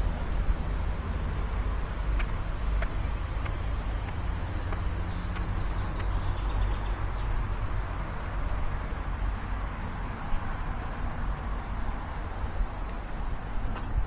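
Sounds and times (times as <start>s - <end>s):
small birds chirping: 2.2s - 7.4s.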